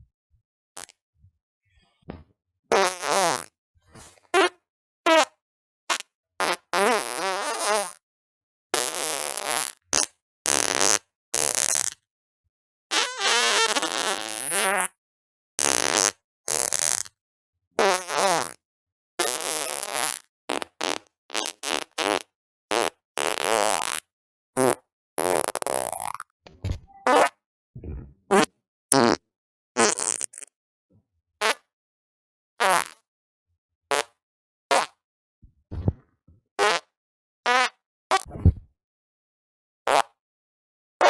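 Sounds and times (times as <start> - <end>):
farts: 2.0 - 4.5, 8.8 - 12.0, 12.9 - 14.9, 15.6 - 17.2, 17.8 - 18.6, 19.2 - 29.2, 29.8 - 30.5, 31.4 - 31.7, 32.6 - 33.0, 33.9 - 35.0, 35.6 - 36.9.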